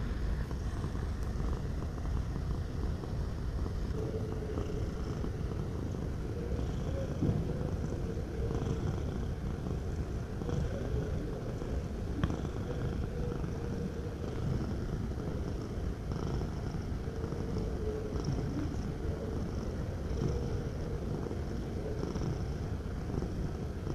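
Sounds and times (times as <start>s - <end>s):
cat purring: 0.0s - 23.9s.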